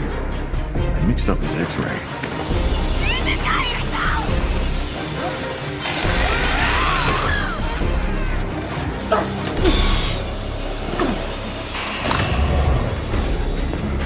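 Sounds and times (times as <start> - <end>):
orchestral horror score: 0.0 - 14.0
screeching metal: 2.7 - 12.4.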